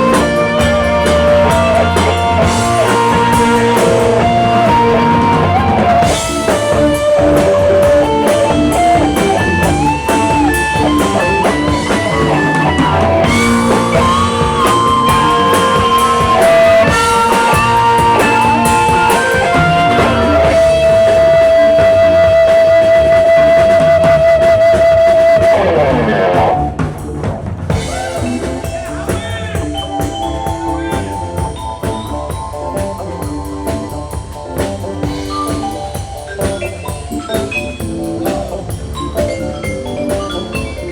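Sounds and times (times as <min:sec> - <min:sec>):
quieter lighter music: 0:00.0 - 0:26.5
electric guitar bending notes: 0:00.0 - 0:27.0
drum kit: 0:00.0 - 0:40.9
rock music: 0:00.0 - 0:40.9.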